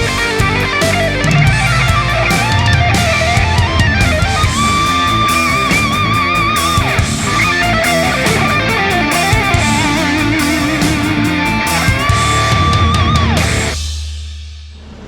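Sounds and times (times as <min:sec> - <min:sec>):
rock music with electric guitar: 0:00.0 - 0:14.0.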